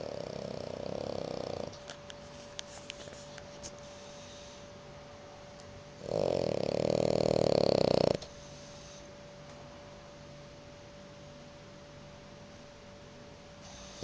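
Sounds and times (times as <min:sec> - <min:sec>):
dog snoring: 0:00.0 - 0:01.8, 0:06.0 - 0:09.0.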